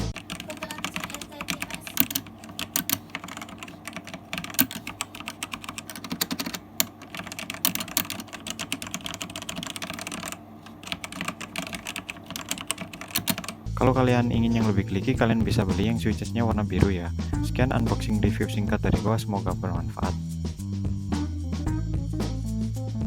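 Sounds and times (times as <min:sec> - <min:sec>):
mechanical keyboard typing: 0:00.0 - 0:13.7.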